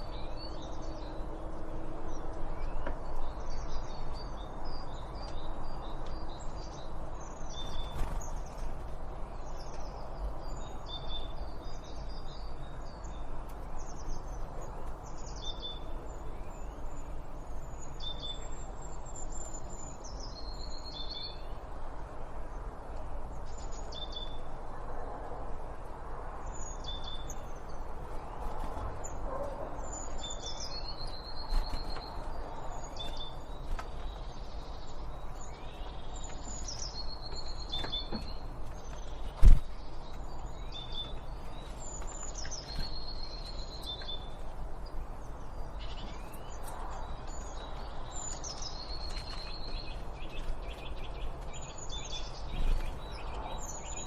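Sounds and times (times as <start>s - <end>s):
songbirds chirping and singing: 0.0s - 25.2s, 26.2s - 54.0s.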